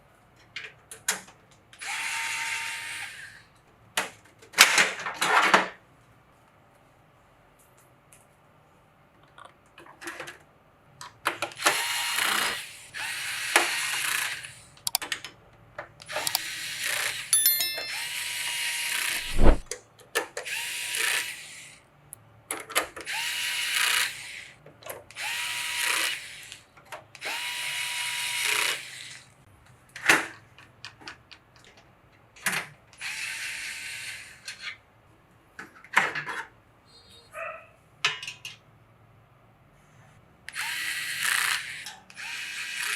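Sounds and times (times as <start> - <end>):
electric screwdriver driving screws: 11.6 - 15.0, 16.1 - 17.2, 25.2 - 26.4, 27.2 - 29.2, 40.5 - 42.9.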